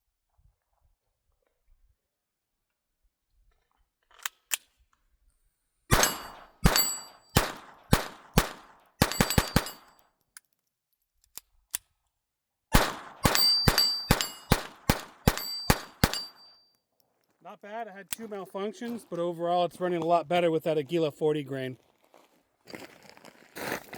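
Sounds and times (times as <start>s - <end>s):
pistol shots: 5.9s - 9.9s, 12.7s - 16.5s
short metallic ring: 6.0s - 7.3s, 13.3s - 14.6s, 15.3s - 16.7s
small clicks: 9.9s - 12.2s.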